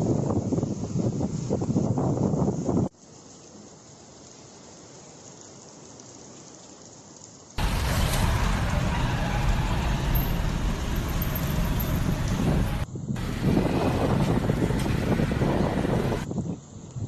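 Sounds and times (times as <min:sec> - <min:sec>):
gusting wind buffeting microphone: 0:00.0 - 0:02.9, 0:07.6 - 0:17.0.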